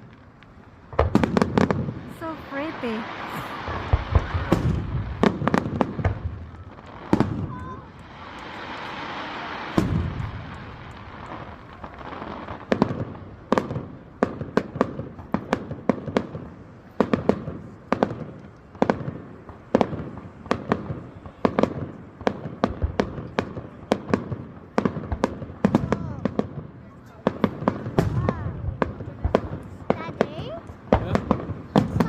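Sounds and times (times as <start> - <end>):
firework shells bursting: 0.0 - 19.2.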